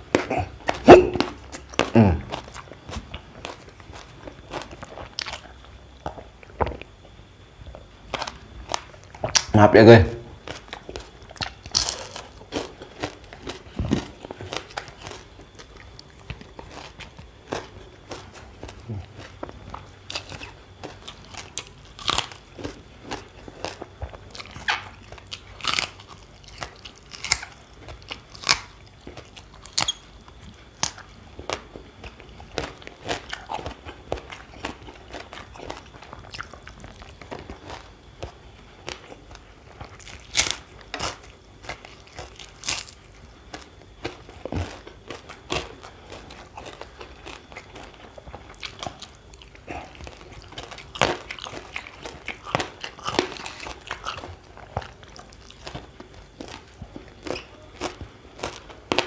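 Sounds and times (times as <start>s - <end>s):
person chewing crunchy food: 0.0s - 59.0s.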